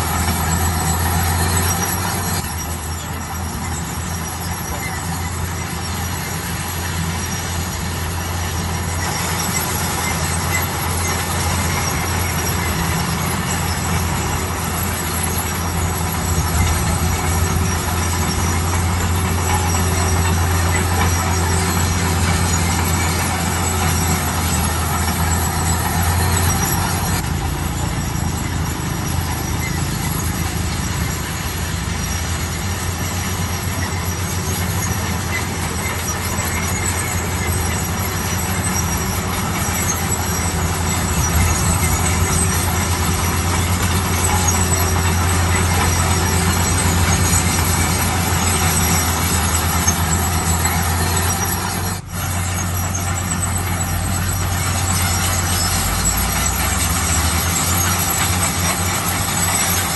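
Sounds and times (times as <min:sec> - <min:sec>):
bulldozer engine running: 0:00.0 - 0:59.9.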